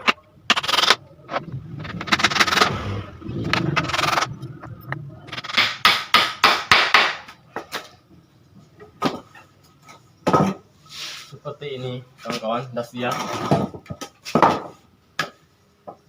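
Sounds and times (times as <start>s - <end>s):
steady noise: 0.0s - 7.2s
hammer striking wooden frame: 5.4s - 7.4s.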